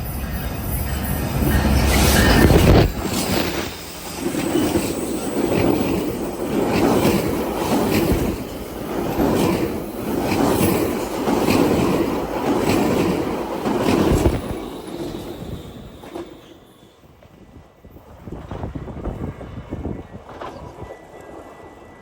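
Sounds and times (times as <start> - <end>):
train wheels clattering over rails: 0.0 - 16.6.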